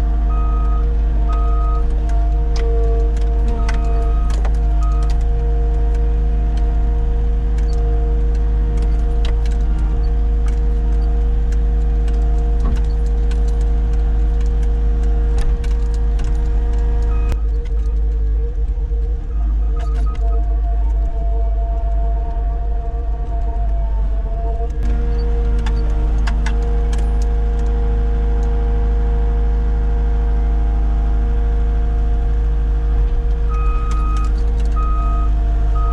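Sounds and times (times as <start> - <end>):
diesel engine running: 0.0 - 35.9
reversing alarm beep: 33.5 - 35.9.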